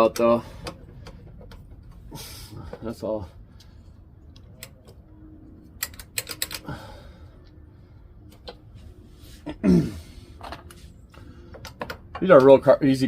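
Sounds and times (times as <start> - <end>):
metal clicks of hand tools: 5.8 - 6.7
person grunting: 9.5 - 10.1.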